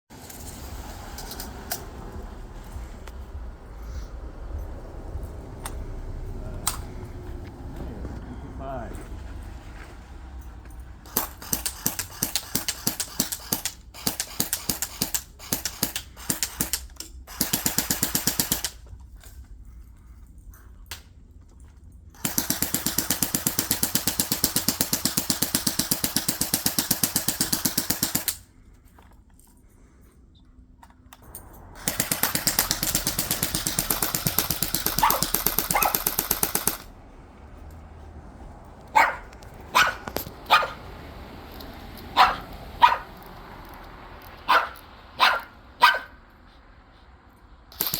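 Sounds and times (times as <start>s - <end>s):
airsoft rifle firing: 11.1s - 18.8s, 22.2s - 28.4s, 31.8s - 36.9s.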